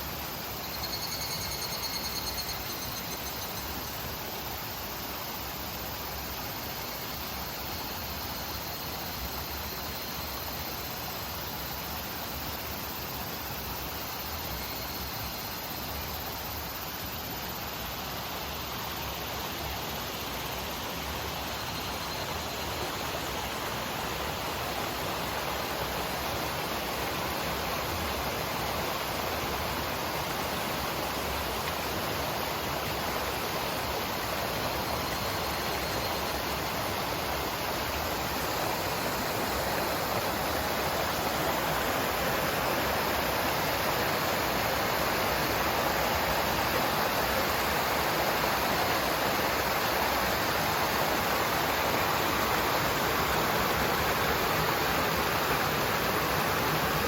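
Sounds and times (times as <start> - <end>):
stream flowing over rocks: 18.4 - 57.0.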